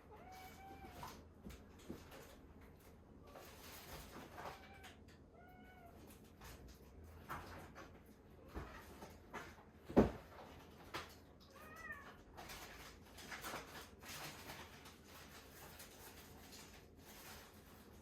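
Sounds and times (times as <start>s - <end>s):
cat meowing: 0.0s - 1.2s, 4.3s - 6.1s, 11.4s - 12.2s
soft clicks and rustles: 6.0s - 18.0s.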